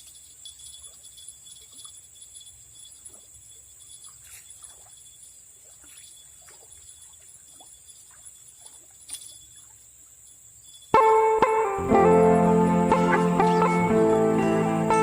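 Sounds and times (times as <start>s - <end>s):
faint chirps: 0.0s - 11.1s
high-pitched insect drone: 0.0s - 15.0s.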